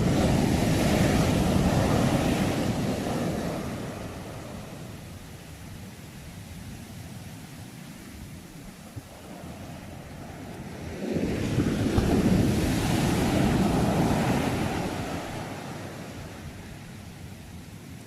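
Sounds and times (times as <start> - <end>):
ocean wave breaking: 0.0 - 5.2, 9.0 - 16.8.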